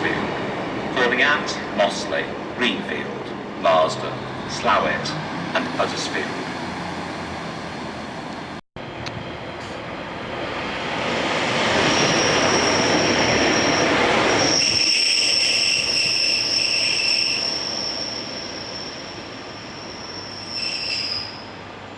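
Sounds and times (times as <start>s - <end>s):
train rumble: 0.0s - 21.9s
wheels squealing on rails: 11.3s - 21.7s.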